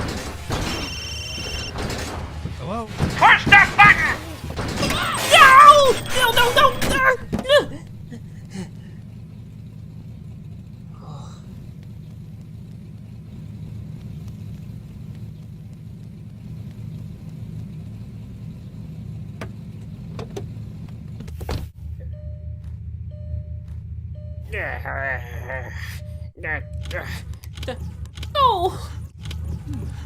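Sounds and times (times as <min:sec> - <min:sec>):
car engine idling: 0:00.0 - 0:30.0
sharp clicks: 0:26.8 - 0:28.4.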